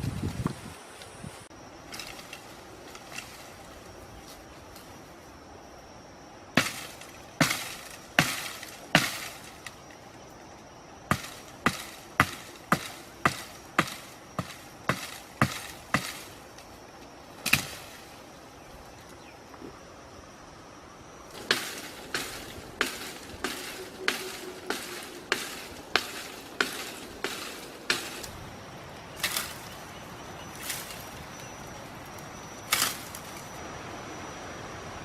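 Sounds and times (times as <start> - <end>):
blade chopping strikes: 11.1 - 16.3, 21.4 - 28.3.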